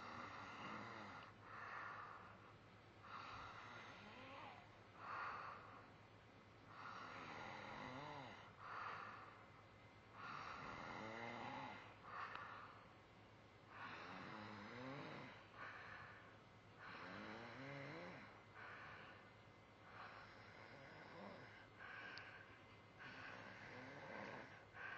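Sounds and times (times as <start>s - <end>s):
faint snoring: 0.0s - 2.4s, 3.0s - 5.8s, 6.7s - 9.4s, 10.1s - 12.8s, 13.7s - 19.2s, 19.8s - 24.9s.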